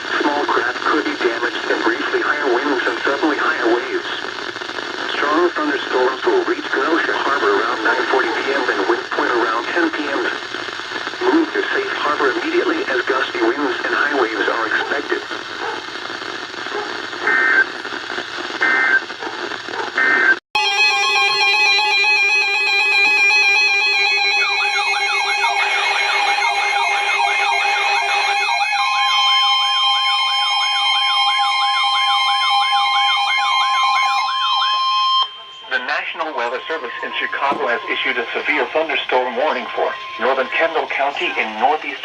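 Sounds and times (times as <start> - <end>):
radio hiss: 0.0 - 20.4, 23.9 - 42.0
multi-tone alarm: 18.6 - 42.0
rising and falling siren wail: 20.6 - 40.4.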